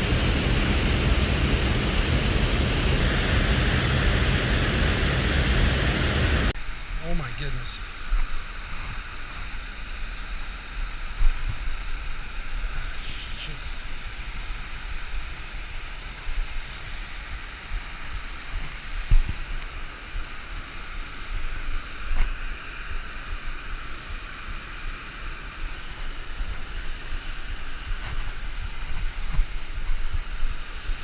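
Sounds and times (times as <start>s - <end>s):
wind buffeting microphone: 0.0s - 6.6s.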